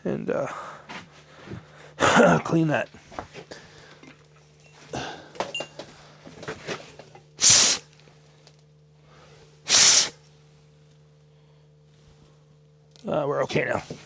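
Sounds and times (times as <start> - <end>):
aerosol can spraying: 7.4 - 7.8, 9.7 - 10.1.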